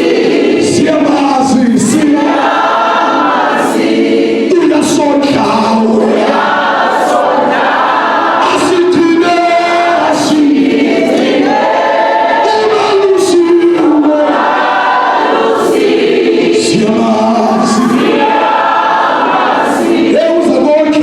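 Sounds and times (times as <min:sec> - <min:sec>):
congregation singing in chorus: 0:00.0 - 0:21.0.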